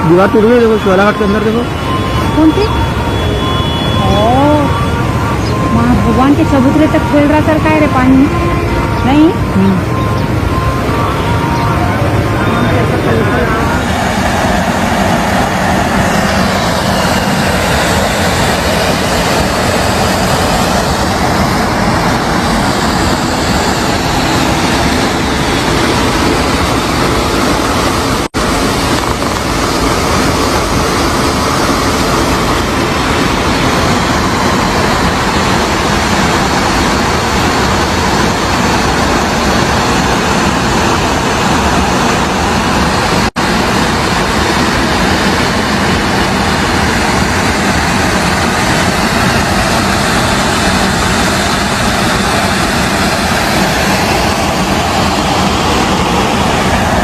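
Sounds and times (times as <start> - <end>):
rushing floodwater: 0.0 - 57.0.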